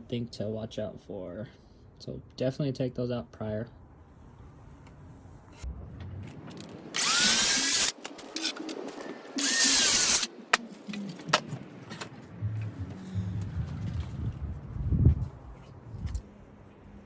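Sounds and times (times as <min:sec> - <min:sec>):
power drill spinning: 0:07.0 - 0:08.6, 0:09.4 - 0:10.3.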